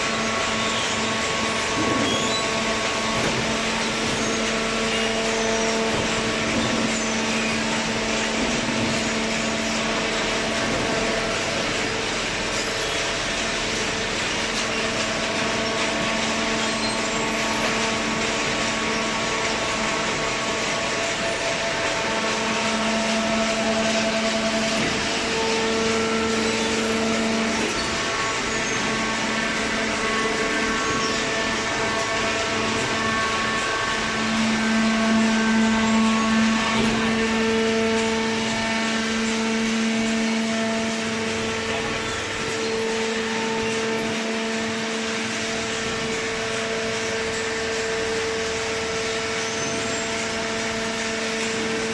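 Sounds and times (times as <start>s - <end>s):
hydraulic baler humming: 0.0s - 51.9s.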